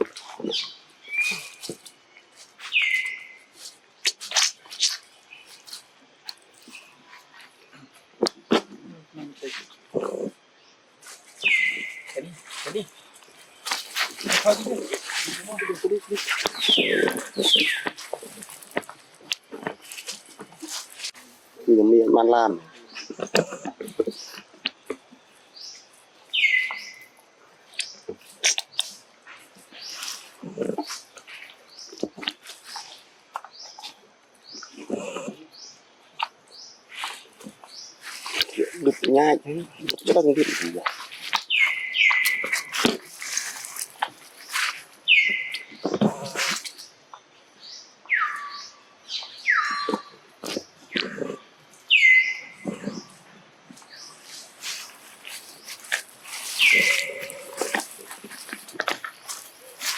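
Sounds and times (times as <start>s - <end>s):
monkeys squeaking and chirping: 0.4s - 1.8s, 11.4s - 13.0s, 13.7s - 18.8s, 40.4s - 43.9s, 54.6s - 59.9s
monkey squeaking and chirping: 0.5s - 1.6s, 14.2s - 18.4s, 56.5s - 57.8s.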